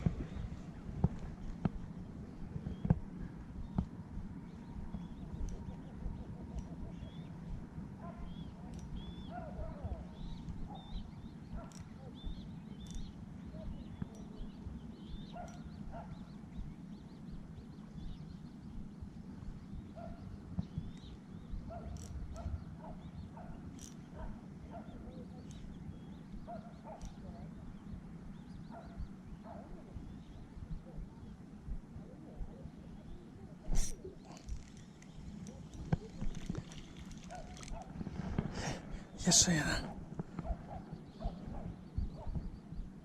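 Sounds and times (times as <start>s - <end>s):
sharp clicks: 33.7s - 37.9s.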